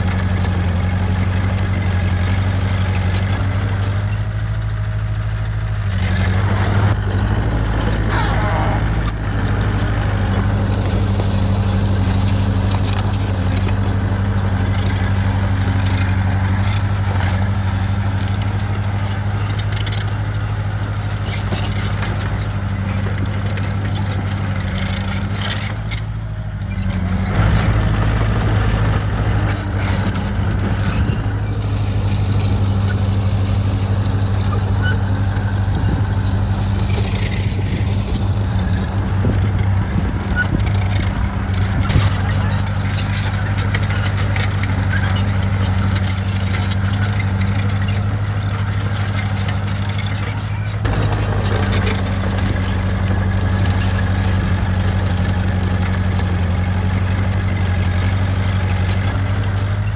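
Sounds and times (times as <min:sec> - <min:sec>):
diesel engine running under load: 0:00.0 - 0:59.9
metallic clinks and rattles: 0:29.4 - 0:59.9.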